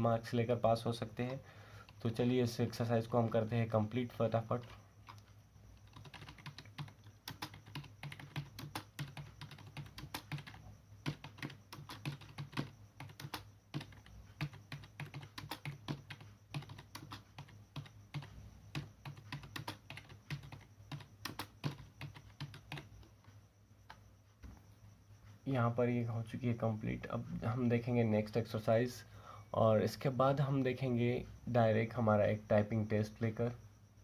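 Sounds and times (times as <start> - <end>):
keyboard typing: 3.0 - 24.0.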